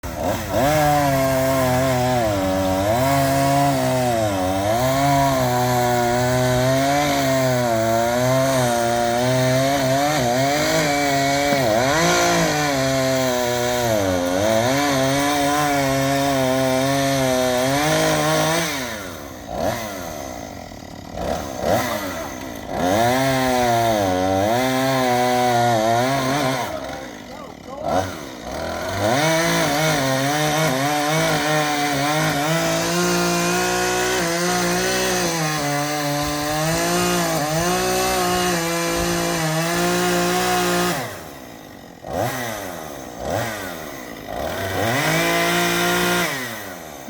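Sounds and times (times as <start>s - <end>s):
chainsaw cutting wood: 0.0s - 47.0s.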